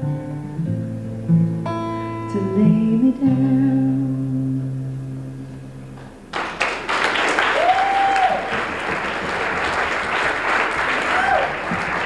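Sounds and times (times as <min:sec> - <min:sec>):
acoustic guitar chord ringing: 0:00.0 - 0:06.0
audience applause: 0:06.3 - 0:12.0
person whooping: 0:07.4 - 0:08.6, 0:10.9 - 0:11.8.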